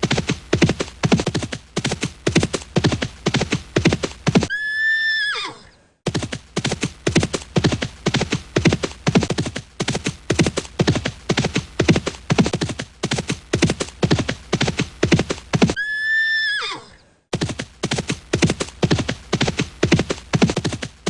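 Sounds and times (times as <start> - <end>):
horse hooves galloping: 0.0 - 4.6, 6.1 - 15.9, 17.3 - 21.0
horse neighing: 4.5 - 5.8, 15.8 - 17.0.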